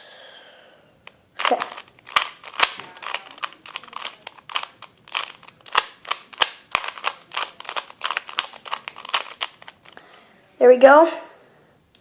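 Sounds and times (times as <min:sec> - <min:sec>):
plastic puzzle cube clicking: 0:01.4 - 0:10.0.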